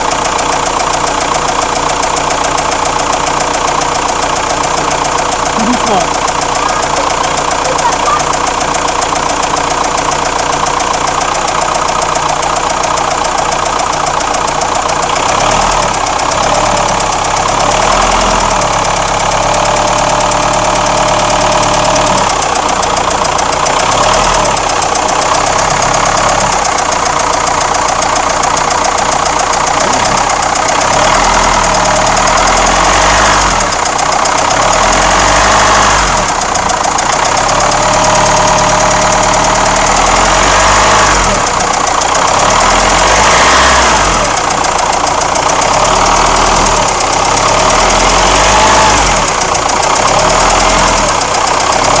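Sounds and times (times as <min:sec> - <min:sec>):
diesel engine revving with clatter: 0:00.0 - 0:52.0.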